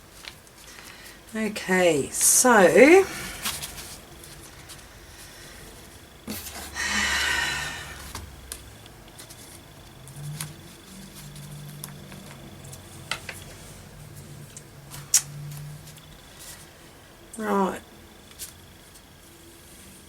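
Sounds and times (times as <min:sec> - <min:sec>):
rustle of craft materials: 0:00.0 - 0:01.6, 0:02.9 - 0:06.8, 0:08.0 - 0:17.0.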